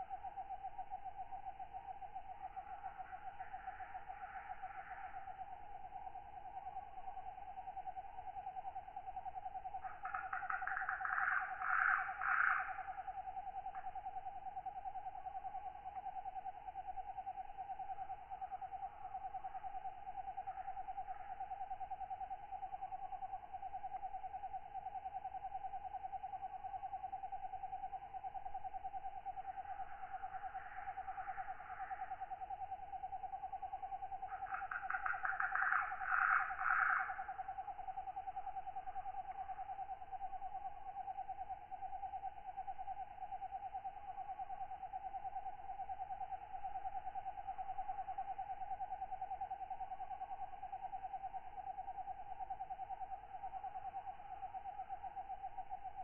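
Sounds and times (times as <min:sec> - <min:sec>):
rasping katydid calls: 0:10.0 - 0:12.7, 0:34.3 - 0:37.3
katydid pulsing trill: 0:29.1 - 0:42.3.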